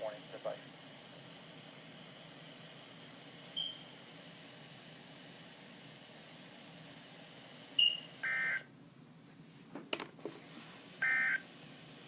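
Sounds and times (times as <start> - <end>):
radio hiss: 0.0 - 0.8.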